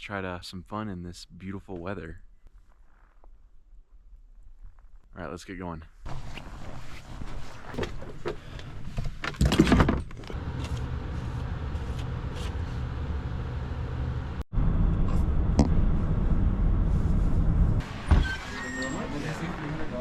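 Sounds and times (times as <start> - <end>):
car engine and road rumble: 9.6 - 20.0.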